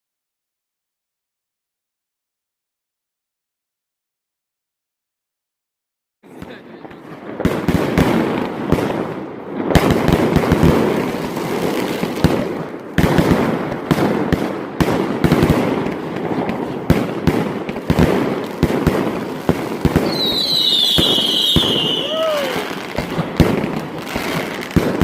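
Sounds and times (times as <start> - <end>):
fireworks rumble and crackle: 6.2 - 25.0.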